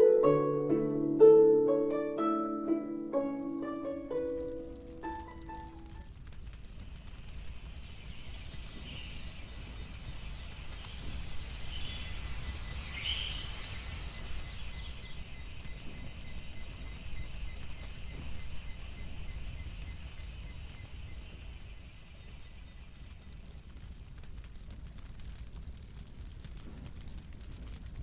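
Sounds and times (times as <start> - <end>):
bird chirps: 0.0 - 6.0, 7.8 - 23.6
insect drone: 0.0 - 6.1, 6.7 - 23.8
low wind rumble: 3.0 - 23.7.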